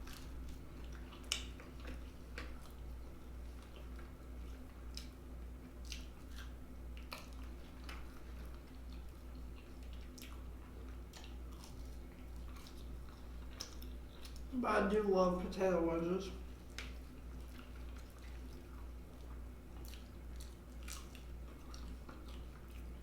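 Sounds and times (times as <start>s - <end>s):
person chewing food: 0.0s - 14.5s, 16.4s - 23.0s
steady low hum: 0.0s - 23.0s
wet mouth clicks and smacks: 0.1s - 2.8s, 5.8s - 8.1s, 12.5s - 14.5s, 19.8s - 23.0s.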